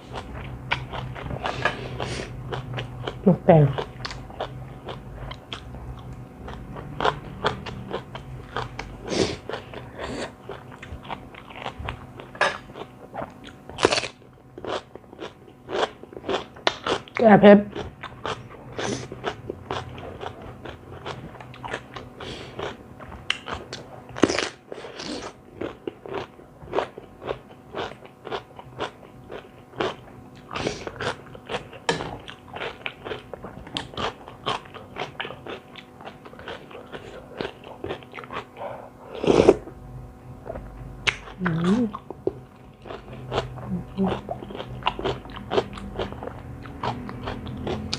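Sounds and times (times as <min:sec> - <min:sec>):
person chewing crisp food: 0:00.0 - 0:47.9.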